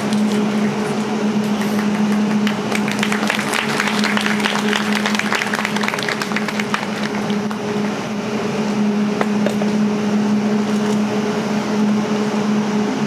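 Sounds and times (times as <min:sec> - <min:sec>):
steady low hum: 0:00.0 - 0:13.0
audience clapping: 0:01.4 - 0:08.0.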